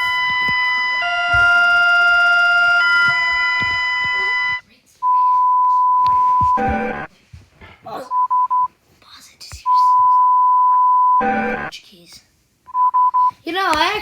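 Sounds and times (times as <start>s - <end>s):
electronic alarm chord: 0.0s - 7.1s, 10.6s - 11.7s
steady beep tone: 0.0s - 7.1s, 8.1s - 8.7s, 9.7s - 11.7s, 12.7s - 13.4s.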